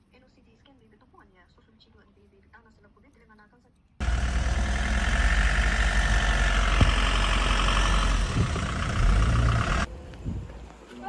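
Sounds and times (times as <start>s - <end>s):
vehicle engine rumbling: 4.0s - 9.9s.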